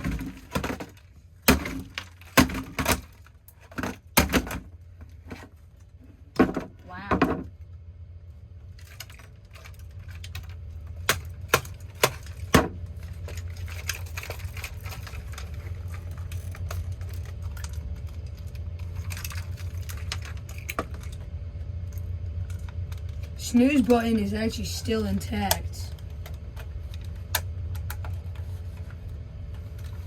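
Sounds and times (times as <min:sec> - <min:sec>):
plastic pieces knocking: 0:00.0 - 0:05.5, 0:08.8 - 0:21.2.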